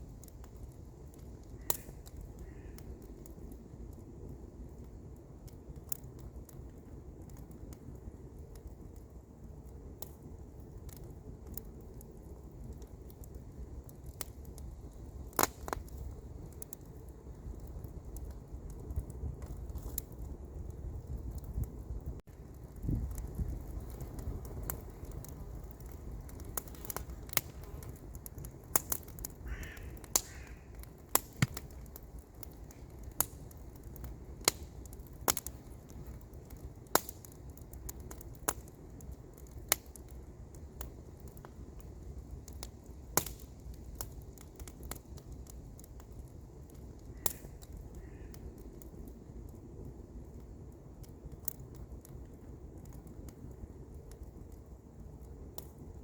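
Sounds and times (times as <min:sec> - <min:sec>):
campfire crackling and popping: 0:00.0 - 0:56.0
bird calling: 0:29.5 - 0:30.7.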